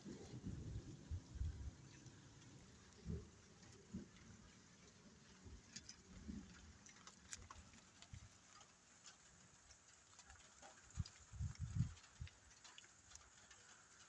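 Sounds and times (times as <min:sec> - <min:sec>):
faint clicks: 0:05.6 - 0:14.0.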